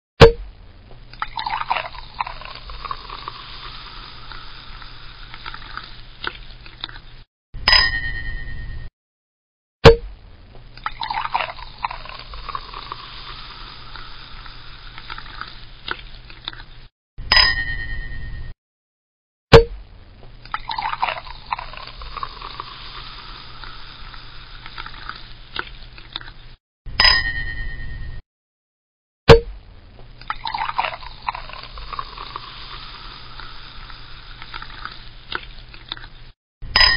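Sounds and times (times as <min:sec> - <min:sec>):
champagne pouring and fizzing: 0:01.2 - 0:07.3, 0:10.8 - 0:16.9, 0:20.5 - 0:26.6, 0:30.2 - 0:36.3.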